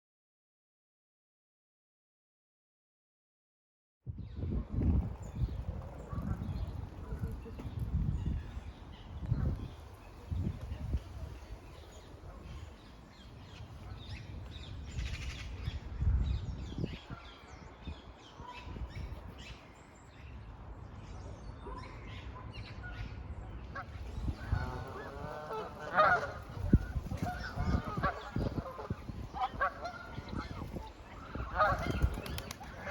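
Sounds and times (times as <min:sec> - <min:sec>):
geese honking: 0:23.8 - 0:32.9.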